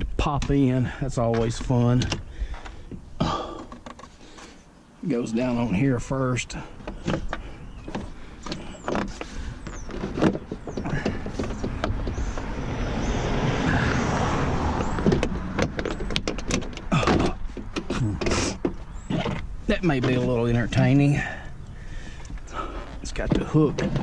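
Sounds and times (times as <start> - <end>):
plastic panel scraping: 6.7 - 13.3, 14.6 - 20.9, 22.5 - 24.0.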